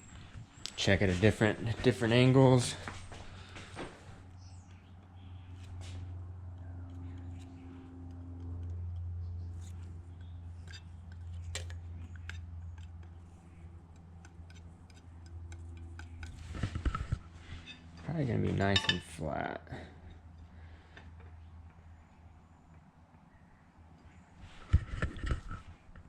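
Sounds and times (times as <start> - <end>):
steady low hum: 0.0 - 26.0
metal tools clicking and scraping: 6.5 - 16.9, 17.5 - 19.2.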